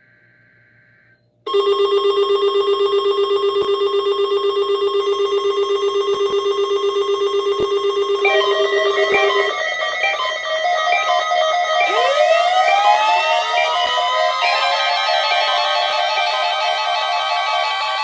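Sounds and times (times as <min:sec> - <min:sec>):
alarm tones stepping up and down: 0:01.5 - 0:18.0
pulsing alert buzz: 0:05.9 - 0:17.7.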